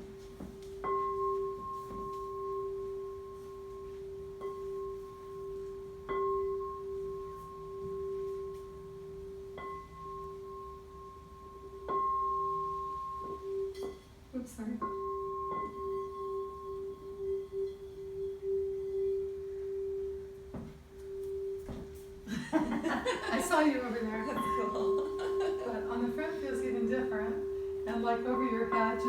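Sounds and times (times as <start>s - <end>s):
crystal singing bowls ringing: 14.8s - 29.0s.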